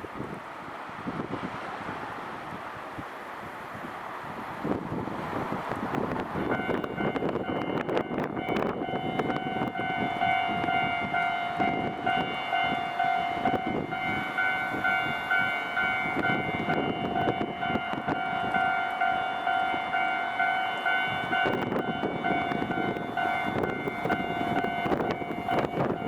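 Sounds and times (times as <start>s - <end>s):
level crossing warning bell: 6.4s - 26.0s.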